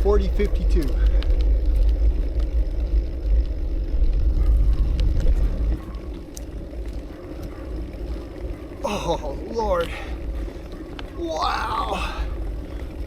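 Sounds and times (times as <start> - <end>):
wind buffeting microphone: 0.0 - 13.0.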